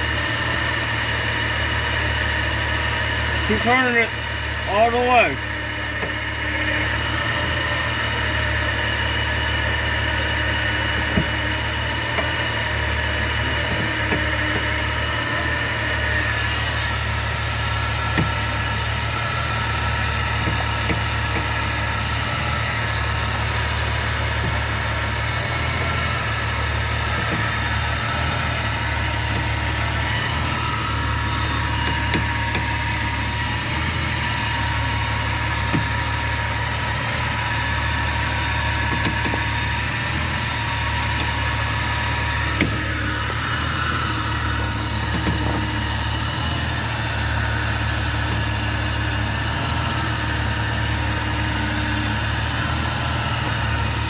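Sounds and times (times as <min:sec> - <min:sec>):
car engine idling: 0:00.0 - 0:54.0
sharp knocks: 0:09.6 - 0:16.5, 0:18.1 - 0:18.6, 0:20.4 - 0:21.8, 0:31.4 - 0:32.8, 0:35.6 - 0:36.1, 0:38.8 - 0:39.5.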